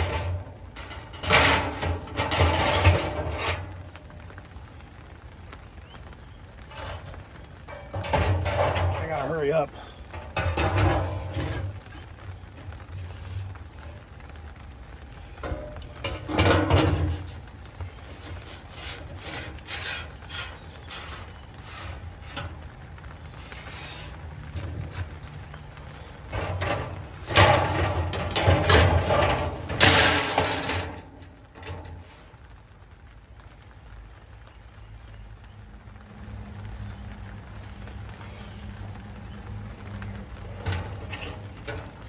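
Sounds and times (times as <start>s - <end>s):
rubbing and scraping: 0.0s - 32.6s, 37.0s - 42.0s
objects clicking and knocking: 6.6s - 14.4s, 15.1s - 32.1s, 39.4s - 42.0s.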